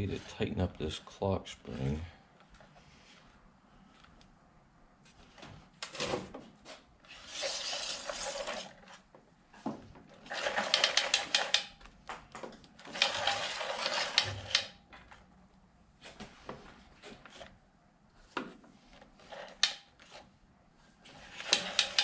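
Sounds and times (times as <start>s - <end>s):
cord reel clicking whir: 10.2s - 11.8s, 12.8s - 14.8s, 21.2s - 22.0s.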